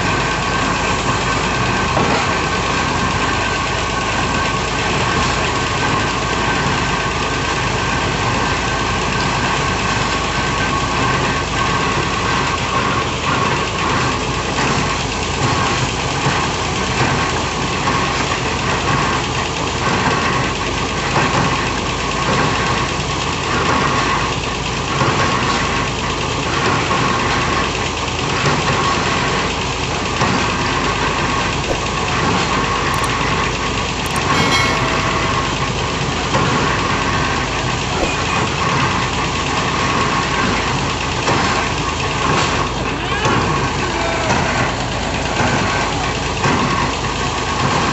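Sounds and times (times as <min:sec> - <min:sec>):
diesel engine running with whine: 0:00.0 - 0:34.0.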